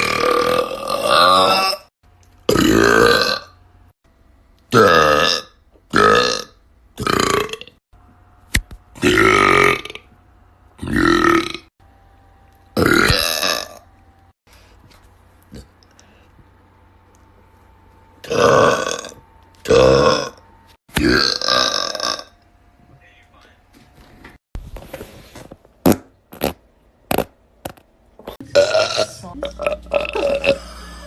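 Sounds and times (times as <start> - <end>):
men burping loudly: 0.0 - 1.8, 18.2 - 20.4, 21.0 - 22.3, 28.4 - 31.0.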